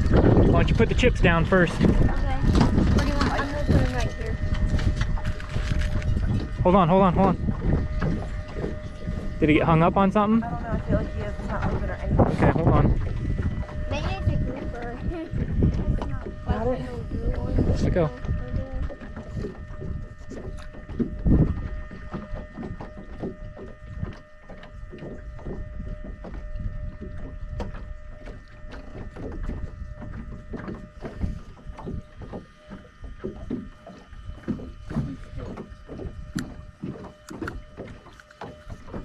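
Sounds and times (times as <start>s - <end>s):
water slapping against boat hull: 0.0s - 39.0s.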